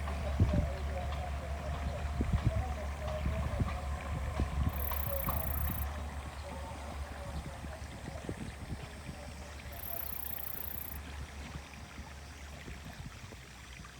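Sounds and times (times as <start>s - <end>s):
trolley train rumbling: 0.0s - 8.0s.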